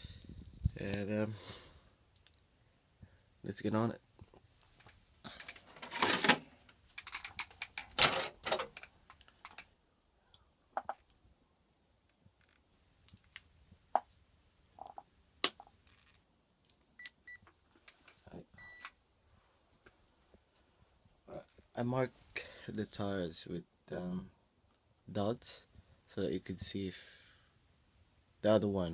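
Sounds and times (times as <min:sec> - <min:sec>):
small hard parts clicking and rattling: 0:04.3 - 0:09.8, 0:12.1 - 0:13.5, 0:14.8 - 0:16.8
faint steady high tone: 0:18.3 - 0:19.0.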